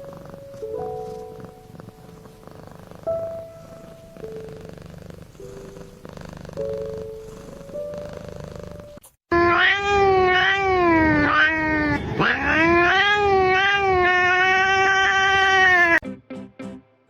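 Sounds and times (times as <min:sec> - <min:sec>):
cat yowling: 0:09.3 - 0:16.0.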